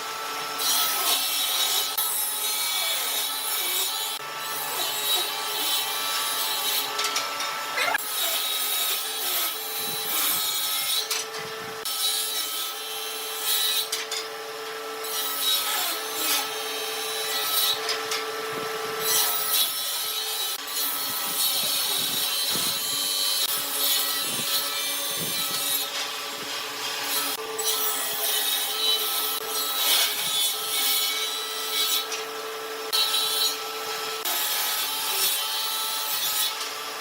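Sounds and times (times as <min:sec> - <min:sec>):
tool rasping wood: 0:02.8 - 0:11.2.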